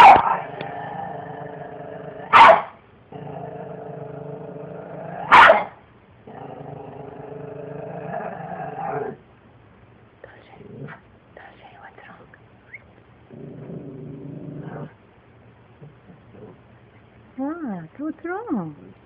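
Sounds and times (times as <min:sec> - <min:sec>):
dog barking: 0:00.0 - 0:00.3, 0:02.3 - 0:02.8, 0:05.2 - 0:05.8
dog growling: 0:00.0 - 0:02.4, 0:03.1 - 0:05.4, 0:06.2 - 0:09.2, 0:10.6 - 0:11.0, 0:13.3 - 0:15.0, 0:15.8 - 0:16.7.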